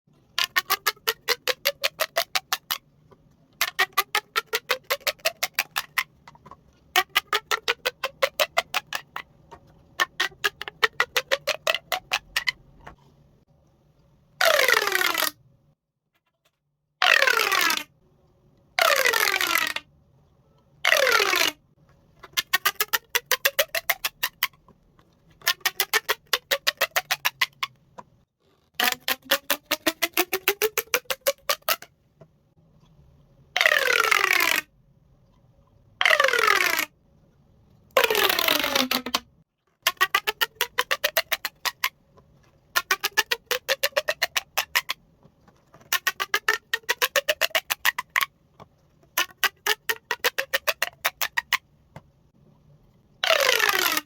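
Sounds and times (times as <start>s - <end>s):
pop tube rapid clicks: 0.4s - 2.9s, 3.6s - 6.4s, 7.0s - 12.6s, 22.2s - 24.6s, 25.4s - 27.8s, 42.8s - 45.0s.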